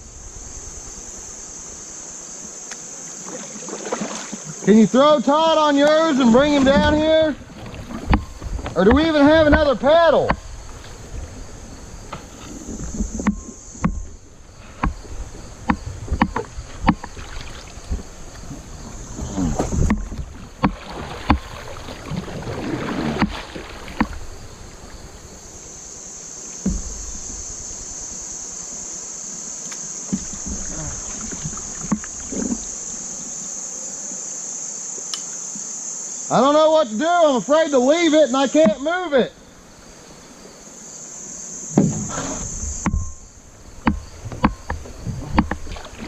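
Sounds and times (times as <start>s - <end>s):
crickets chirping: 0.0s - 46.0s
water sloshing: 3.2s - 4.7s, 6.1s - 14.2s, 14.8s - 25.4s, 30.1s - 32.8s, 43.5s - 46.0s
kayak knocking and clattering: 5.8s - 11.1s, 12.0s - 24.6s, 30.1s - 32.8s, 43.8s - 46.0s.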